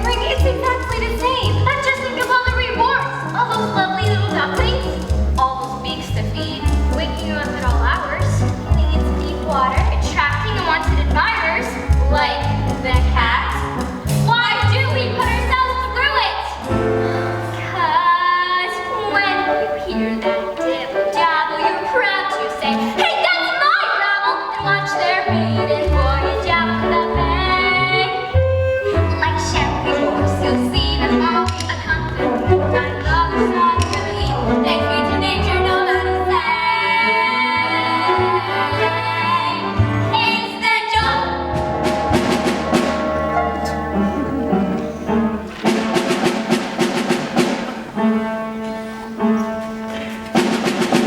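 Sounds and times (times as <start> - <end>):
musical theatre song: 0.0 - 51.0
sustained instrumental chords: 41.0 - 49.3
quick drum strikes: 41.6 - 43.5, 45.4 - 48.0, 50.4 - 51.0.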